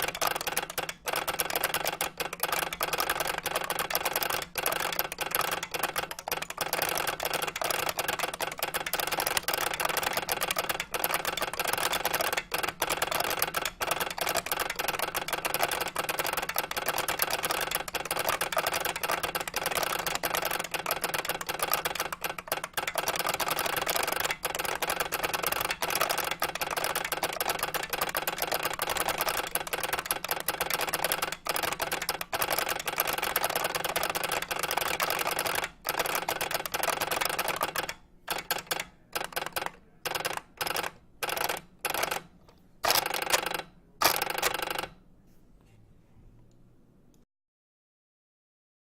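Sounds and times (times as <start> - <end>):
fast mechanical keyboard typing: 0.0 - 45.0.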